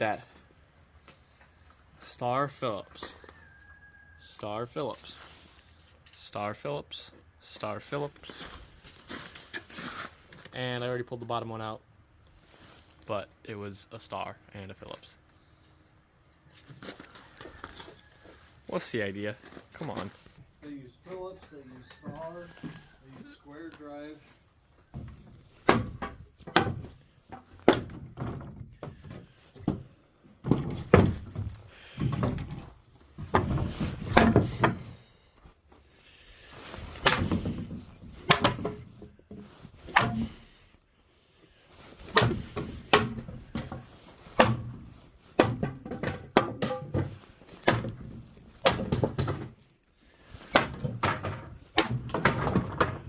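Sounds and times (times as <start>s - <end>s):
heavy knocks and thuds: 25.0s - 35.0s, 37.0s - 39.2s, 42.1s - 49.6s.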